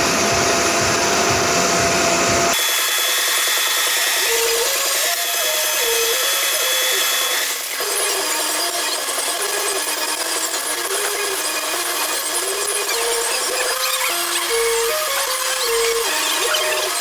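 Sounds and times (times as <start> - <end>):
metal lathe cutting hiss: 0.0 - 10.2.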